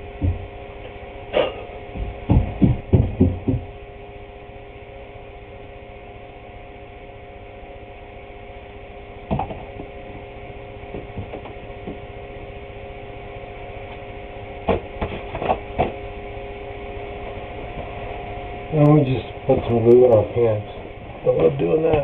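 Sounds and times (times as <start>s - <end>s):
steady hum: 0.0s - 22.0s
wooden boards knocking: 2.0s - 3.7s.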